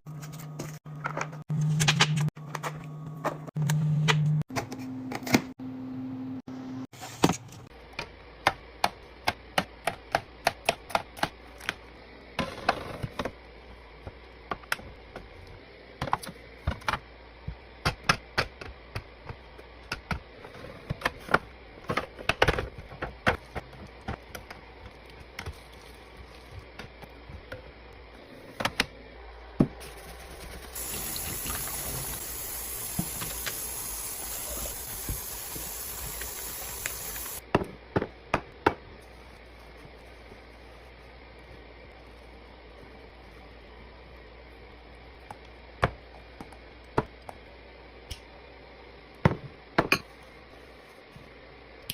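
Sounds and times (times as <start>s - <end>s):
liquid pouring hiss: 30.8s - 37.4s.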